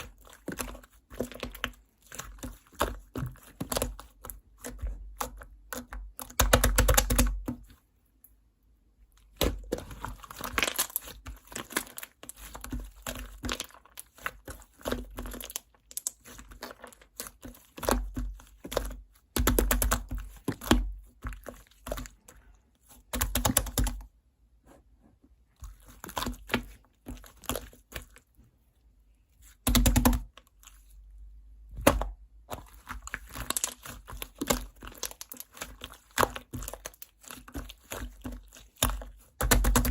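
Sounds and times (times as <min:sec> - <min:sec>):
slime being squished by hand: 0:09.2 - 0:24.1, 0:29.3 - 0:39.9.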